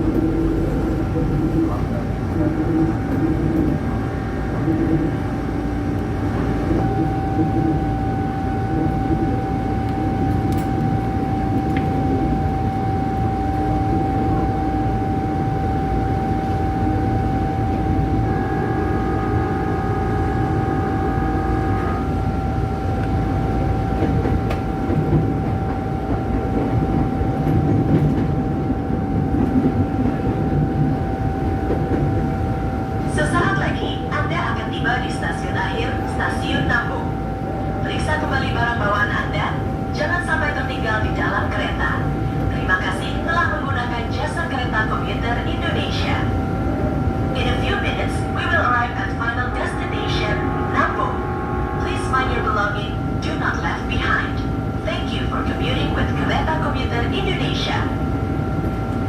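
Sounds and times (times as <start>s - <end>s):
electric train rumble: 0.0s - 59.0s
train whining tone: 0.0s - 59.0s.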